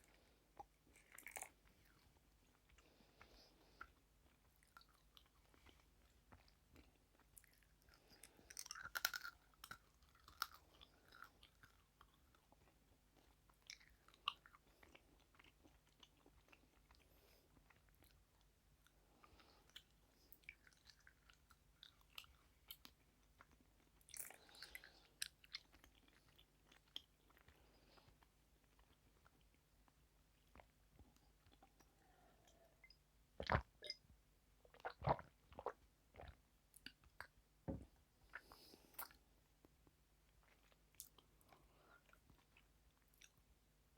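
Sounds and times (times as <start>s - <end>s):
chewing sweets: 0.0s - 34.0s, 38.2s - 43.5s.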